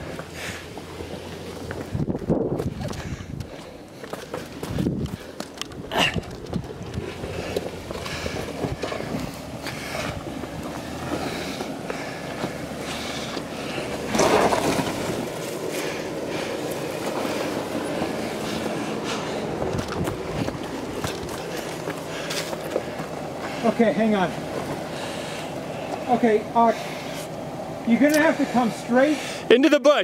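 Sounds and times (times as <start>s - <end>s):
rocks crunching and knocking: 0.0s - 16.0s, 19.4s - 23.6s
tyres rumbling over rocks: 0.0s - 29.6s
off-road vehicle engine running low: 0.0s - 30.0s.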